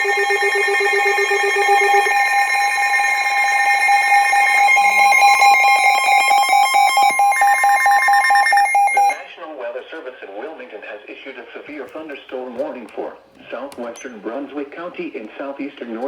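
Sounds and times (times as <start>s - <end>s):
fast pulsing electronic beeps: 0.0s - 9.3s
steady high electronic tone: 0.0s - 9.3s.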